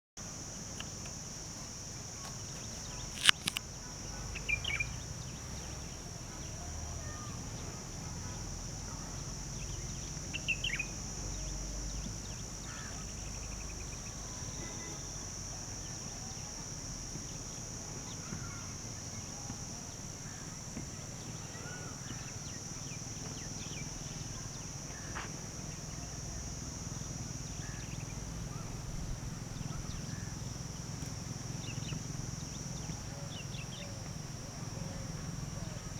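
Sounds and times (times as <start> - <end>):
steady high-pitched hum: 0.2 - 35.9
birds chirping: 27.4 - 35.8.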